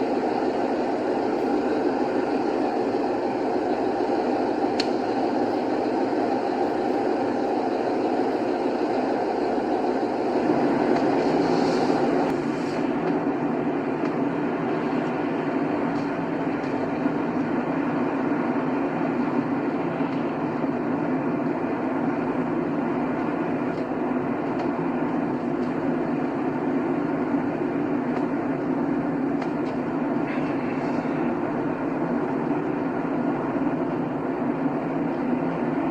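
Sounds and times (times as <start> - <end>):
road and tyre noise: 10.4 - 35.9.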